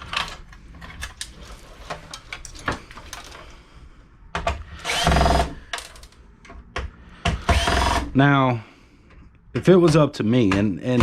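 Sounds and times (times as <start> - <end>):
computer parts clicking and rattling: 0.0 - 3.5.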